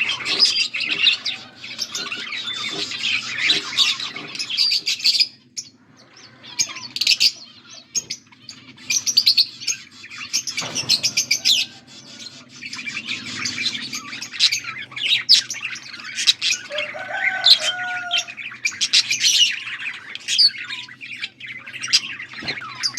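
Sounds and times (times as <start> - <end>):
budgerigars chattering: 0.0 - 22.9.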